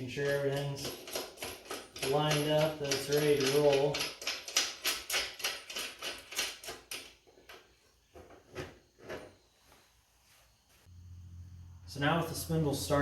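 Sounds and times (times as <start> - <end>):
metal parts knocking: 0.0 - 7.7
fast metallic clicks: 0.2 - 7.1.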